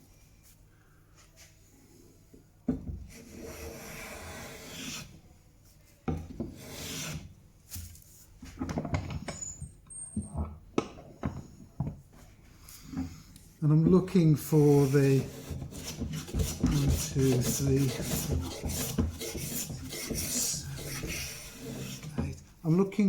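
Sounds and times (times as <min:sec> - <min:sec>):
hand plane shaving wood: 0:03.2 - 0:05.1, 0:06.5 - 0:07.3, 0:14.4 - 0:22.4.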